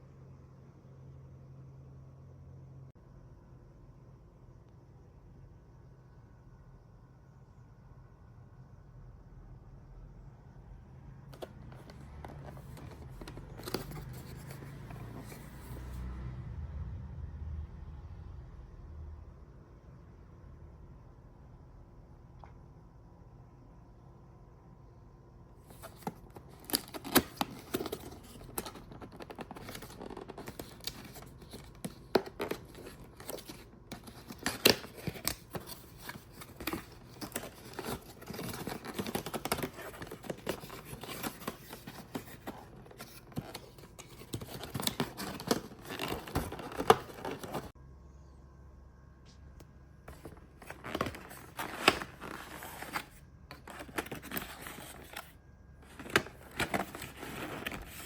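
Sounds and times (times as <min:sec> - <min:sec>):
packaging crinkling and tearing: 0:25.7 - 0:47.7, 0:50.1 - 0:58.0.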